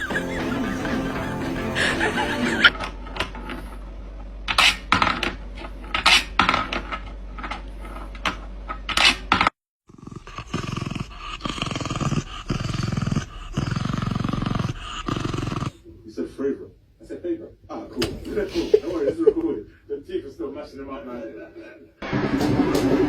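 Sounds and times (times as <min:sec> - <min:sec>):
animal growling: 0:00.0 - 0:02.7, 0:09.9 - 0:15.8.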